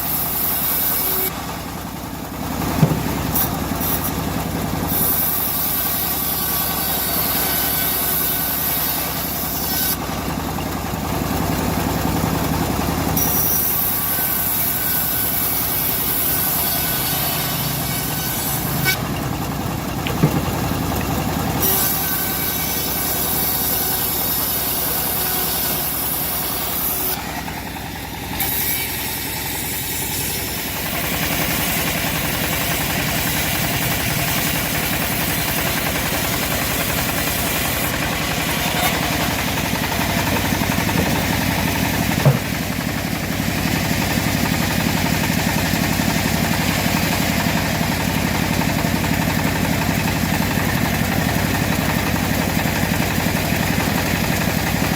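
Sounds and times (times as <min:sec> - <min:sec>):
engine drone: 0:00.0 - 0:54.9
saw blade hissing: 0:13.2 - 0:19.2, 0:28.3 - 0:42.9.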